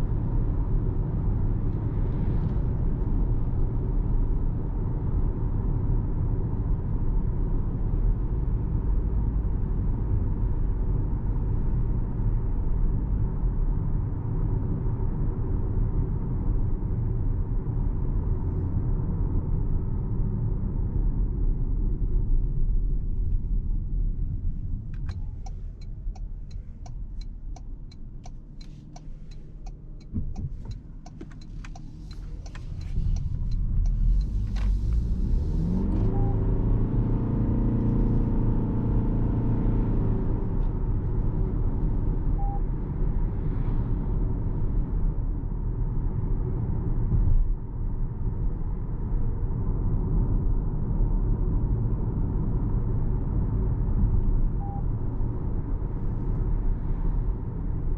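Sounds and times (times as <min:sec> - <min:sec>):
road noise: 0:00.0 - 0:57.9
car engine humming: 0:21.9 - 0:41.7
turn signal clicking: 0:24.9 - 0:36.4.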